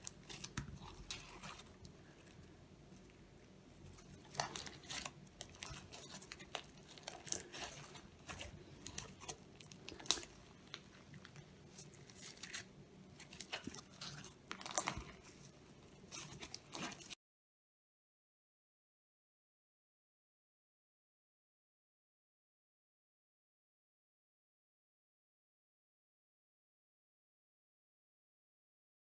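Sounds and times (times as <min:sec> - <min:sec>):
slime crackling and popping: 0:04.0 - 0:17.2.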